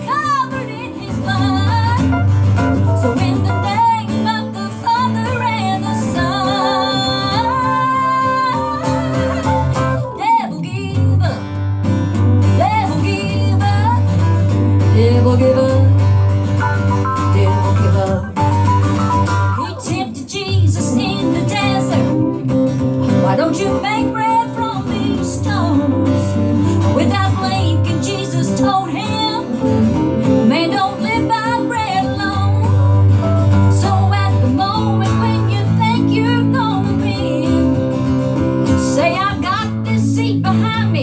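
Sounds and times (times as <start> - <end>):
guitar accompaniment: 0.0 - 41.0
wavering melody line: 16.6 - 19.7.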